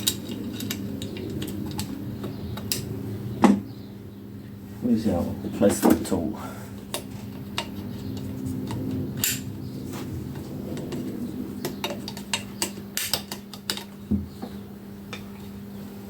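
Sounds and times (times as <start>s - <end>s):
clicks and clinks of hand tools: 0.0s - 2.0s, 10.8s - 14.0s
steady low hum: 0.0s - 16.0s.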